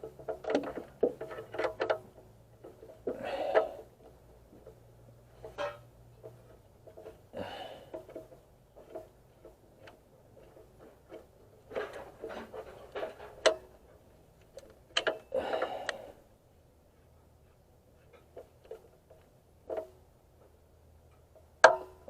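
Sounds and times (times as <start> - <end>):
rustling movement: 0.0 - 21.4
metallic clicks of hand tools: 14.4 - 16.0.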